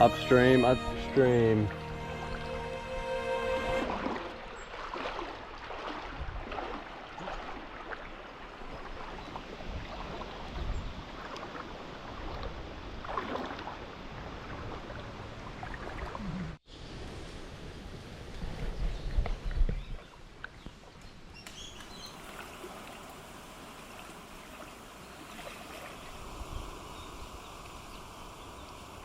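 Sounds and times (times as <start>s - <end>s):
running water: 0.0s - 16.6s, 21.4s - 29.0s
footsteps splashing through water: 3.8s - 16.2s.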